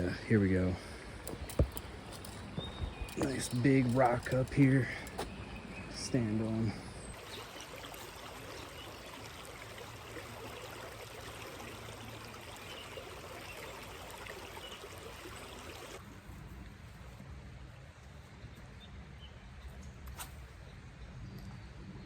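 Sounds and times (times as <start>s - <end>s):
creek water running: 0.0s - 16.0s.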